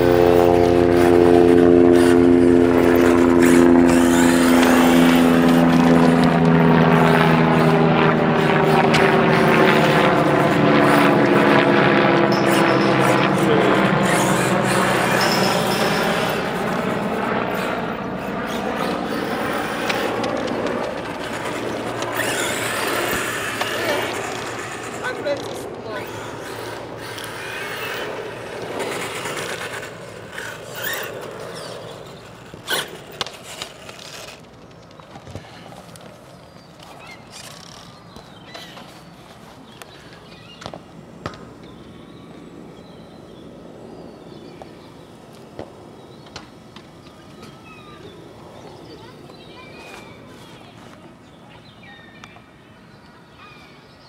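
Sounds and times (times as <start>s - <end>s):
electric motor whine: 0.0s - 52.3s
tyres scraping and crunching: 2.7s - 7.1s, 14.0s - 40.2s.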